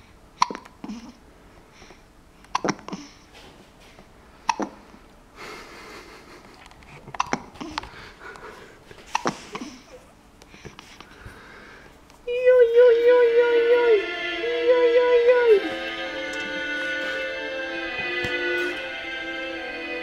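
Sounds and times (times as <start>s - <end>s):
hiccups: 0.4s - 1.2s, 2.5s - 3.2s, 4.5s - 4.8s, 7.2s - 7.8s, 9.1s - 10.1s.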